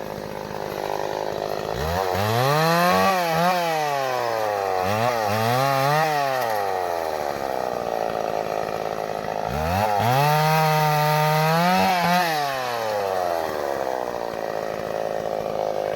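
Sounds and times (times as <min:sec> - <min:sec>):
chainsaw engine revving and idling: 0:00.0 - 0:15.9.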